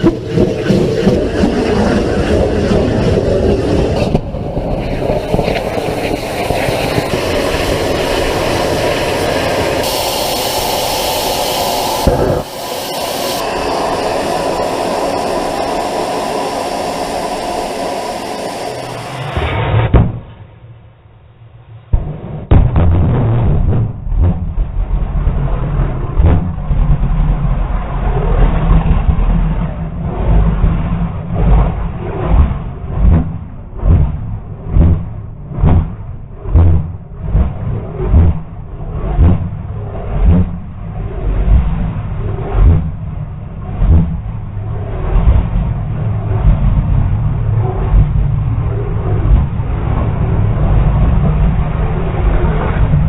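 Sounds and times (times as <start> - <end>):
rocket engine roaring: 0.0 - 53.0
strong hiss: 5.4 - 19.4.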